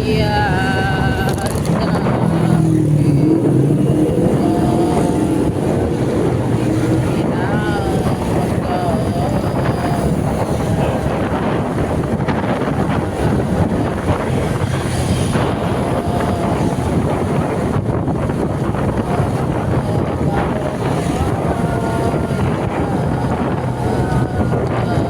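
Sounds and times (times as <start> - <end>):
steady low rumble: 0.0 - 25.0
wind buffeting microphone: 0.0 - 25.0.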